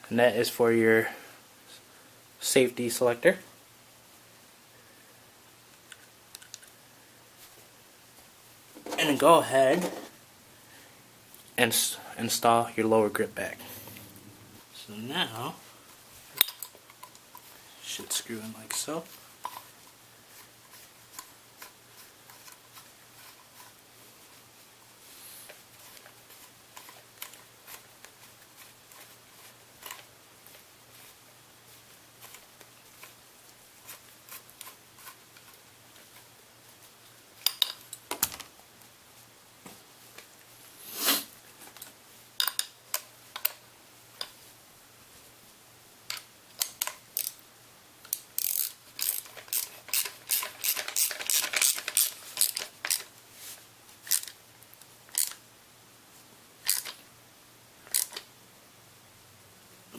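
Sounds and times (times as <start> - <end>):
metal tools clicking and clinking: 48.1 - 53.1.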